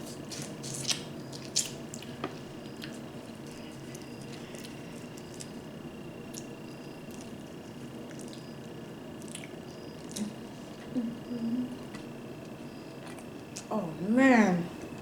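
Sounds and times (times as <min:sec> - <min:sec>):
wet eating squishes: 0:00.0 - 0:10.9
chewing: 0:00.0 - 0:11.0
low voice hum: 0:10.0 - 0:12.1.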